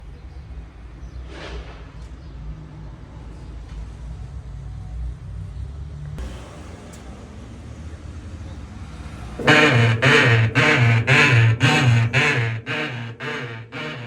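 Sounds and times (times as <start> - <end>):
washing machine running: 6.2 - 14.0.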